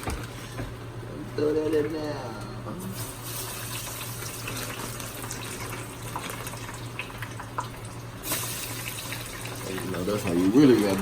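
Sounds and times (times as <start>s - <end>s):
fries sizzling in hot grease: 3.0s - 11.0s.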